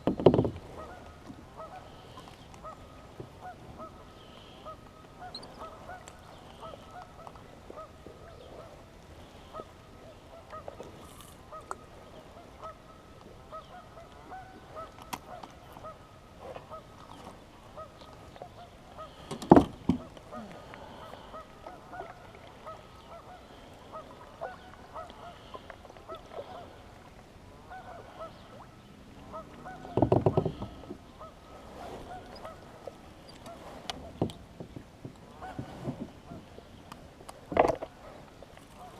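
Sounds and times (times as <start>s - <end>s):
geese honking: 4.6s - 8.0s, 27.6s - 28.6s, 29.2s - 32.8s.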